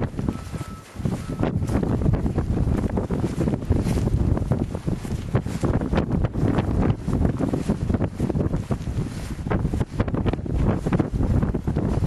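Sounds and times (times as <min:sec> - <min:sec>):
wind buffeting microphone: 0:00.0 - 0:12.0.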